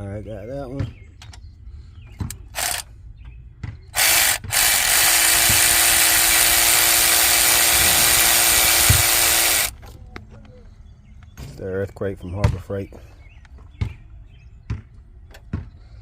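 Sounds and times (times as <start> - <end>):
cordless impact wrench running: 2.6 - 2.9, 4.0 - 9.7.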